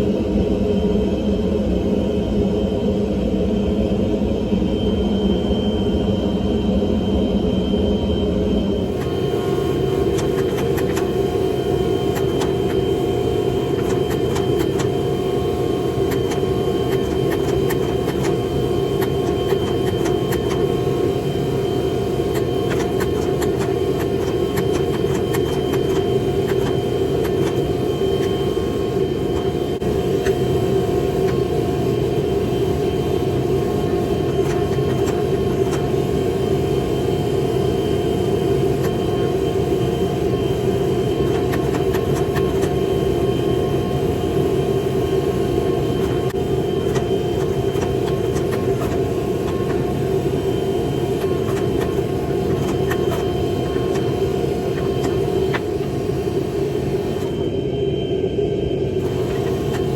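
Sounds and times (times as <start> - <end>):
machine roar with held tones: 0.0 - 59.9.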